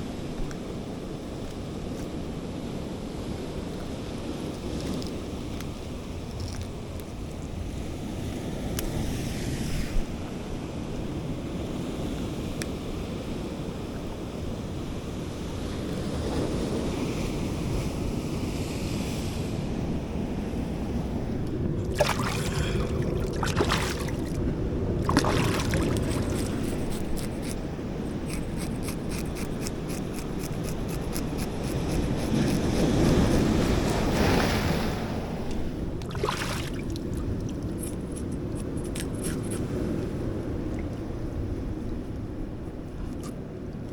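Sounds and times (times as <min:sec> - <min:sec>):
wind on microphone: 0:08.9 - 0:43.9
surf washing against rocks: 0:21.3 - 0:27.0, 0:31.2 - 0:37.8.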